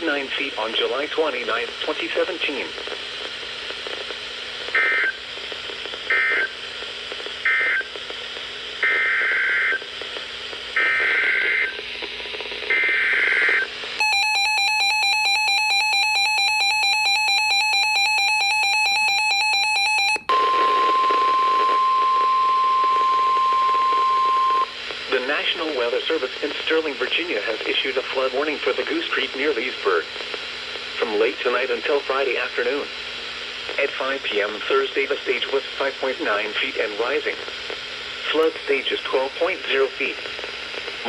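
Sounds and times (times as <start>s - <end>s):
faint radio hiss: 0.0s - 14.0s, 20.3s - 41.0s
steady single-pitch alert tone: 20.3s - 24.7s
two-tone attention signal: 20.3s - 24.7s.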